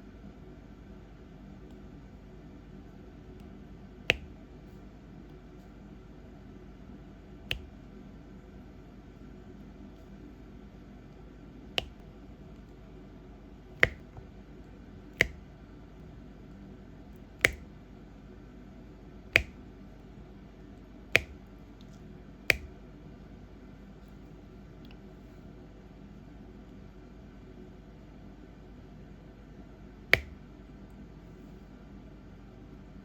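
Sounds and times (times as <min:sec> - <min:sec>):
sharp single clicks: 0:13.8 - 0:14.2, 0:17.4 - 0:17.7, 0:19.4 - 0:19.6, 0:21.2 - 0:21.5, 0:22.5 - 0:22.8.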